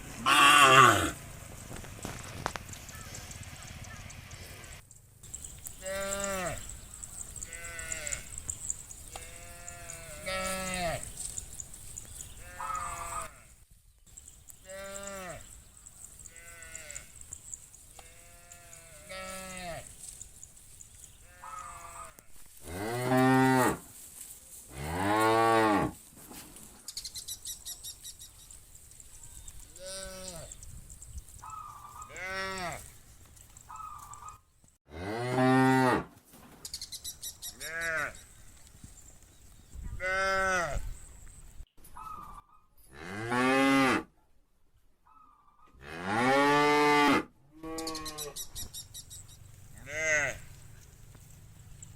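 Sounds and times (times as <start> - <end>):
cattle mooing: 0.2 - 1.2, 49.8 - 50.4.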